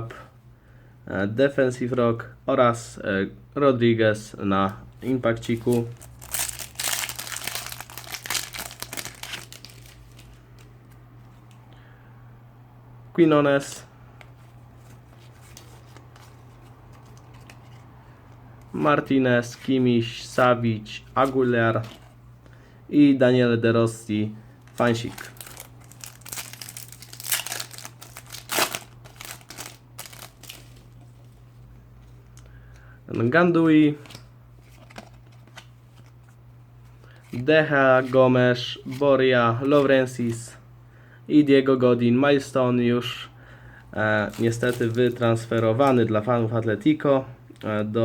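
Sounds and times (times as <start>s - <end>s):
low electrical hum: 0.0s - 48.0s
foil packet crinkling: 5.4s - 10.7s, 24.6s - 31.0s, 44.2s - 46.1s.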